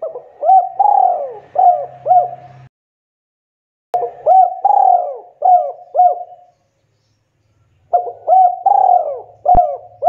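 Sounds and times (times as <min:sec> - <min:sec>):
dove cooing: 0:00.0 - 0:02.7, 0:04.0 - 0:06.6, 0:07.9 - 0:10.0.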